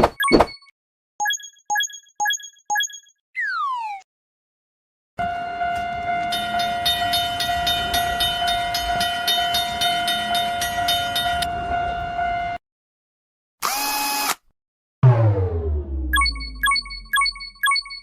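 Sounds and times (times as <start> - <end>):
train horn blast: 5.2 - 12.6
rhythmic clacking: 6.3 - 11.5.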